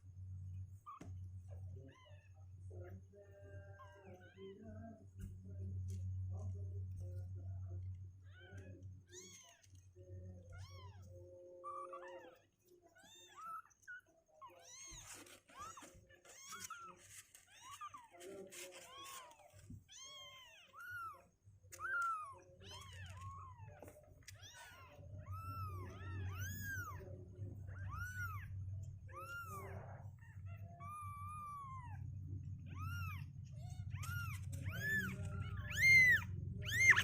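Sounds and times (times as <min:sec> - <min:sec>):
kittens mewing: 0:08.2 - 0:37.0.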